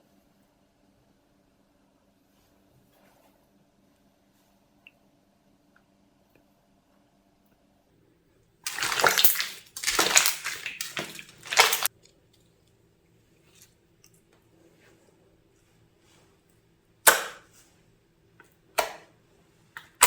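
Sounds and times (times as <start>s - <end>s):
slime squished by hand: 8.7s - 11.9s.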